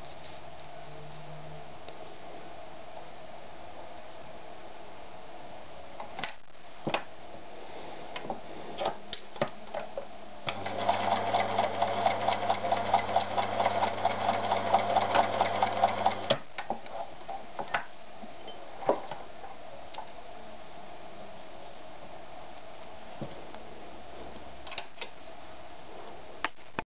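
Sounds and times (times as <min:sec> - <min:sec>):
sewing machine stitching: 0:10.5 - 0:16.4.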